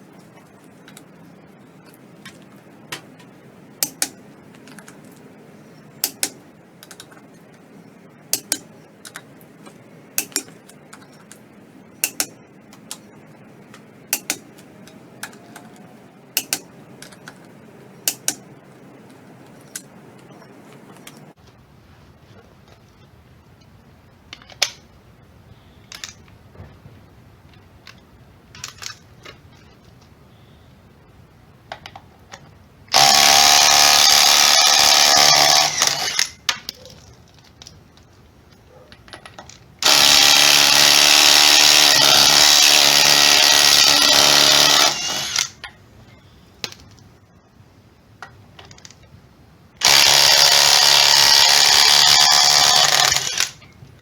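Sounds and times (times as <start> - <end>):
impact wrench running: 3.8 - 4.1, 6.0 - 6.4, 8.4 - 8.6, 10.2 - 10.5, 12.0 - 12.3, 14.2 - 14.4, 16.4 - 16.6, 18.1 - 18.4, 33.0 - 36.3, 39.8 - 45.6, 49.8 - 53.6.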